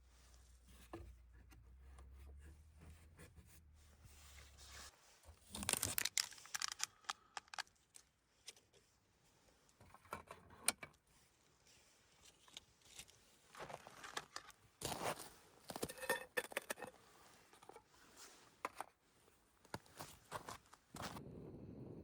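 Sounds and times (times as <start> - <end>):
rustling and crinkling: 0.0 - 21.2
small sharp clicks and knocks: 5.5 - 8.8.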